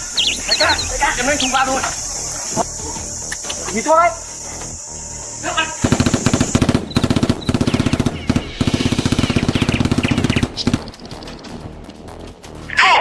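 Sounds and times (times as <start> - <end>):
rapid automatic gunfire: 5.8 - 12.4.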